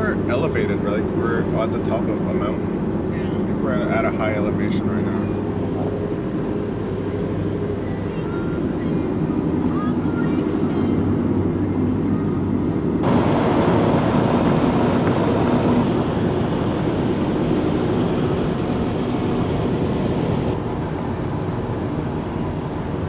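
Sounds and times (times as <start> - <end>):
vehicle engine and road noise: 0.0 - 23.0
rushing noise: 13.0 - 20.7.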